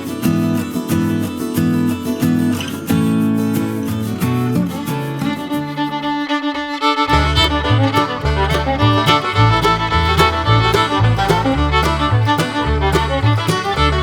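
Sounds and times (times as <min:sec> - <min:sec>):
guitar: 0:00.0 - 0:14.0
fiddle tune: 0:04.6 - 0:14.0
rhythmic bass line: 0:07.1 - 0:14.0.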